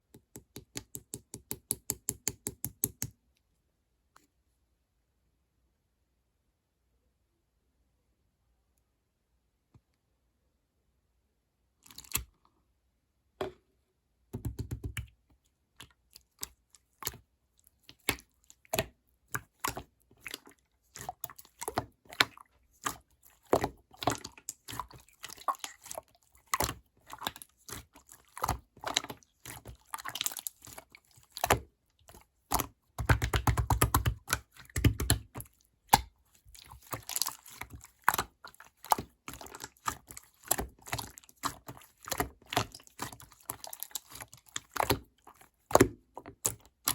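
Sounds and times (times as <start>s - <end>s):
slime squished by hand: 15.8s - 46.9s.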